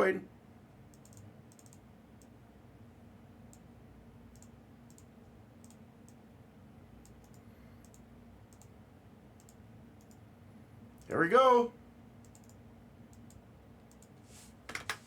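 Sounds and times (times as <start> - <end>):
low room hum: 0.0 - 15.0
keyboard and mouse clicks: 0.9 - 2.3, 4.3 - 6.2, 7.0 - 8.7, 9.4 - 10.2, 12.2 - 15.0.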